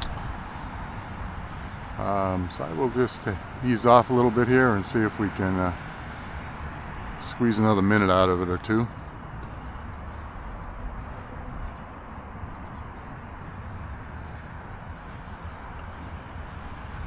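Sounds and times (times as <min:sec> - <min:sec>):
low outdoor rumble: 0:00.0 - 0:17.0
faint high chirps: 0:06.3 - 0:16.8.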